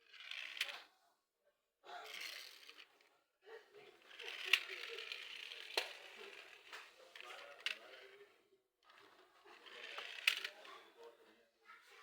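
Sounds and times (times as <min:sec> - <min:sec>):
toy car wheels whirring: 0:00.0 - 0:00.9, 0:04.0 - 0:11.0.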